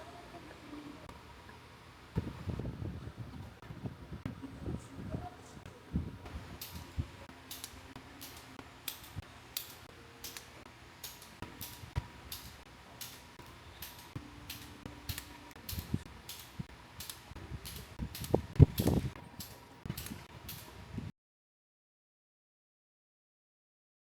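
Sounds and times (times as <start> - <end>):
faint motor hum: 0.0 - 21.1
high-pitched mechanical clicks: 6.3 - 20.8.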